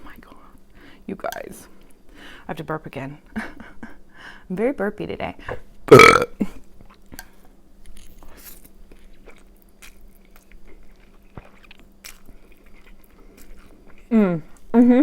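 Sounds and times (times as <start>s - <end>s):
person chewing food: 5.9s - 14.7s
small crunches: 7.2s - 14.1s.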